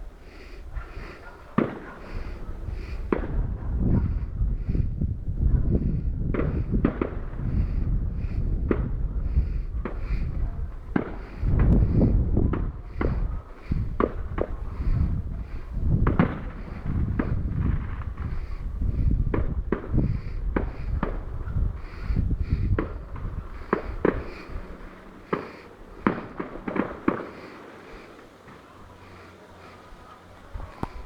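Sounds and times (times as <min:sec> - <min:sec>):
fireworks bangs and crackles: 0:00.4 - 0:29.3.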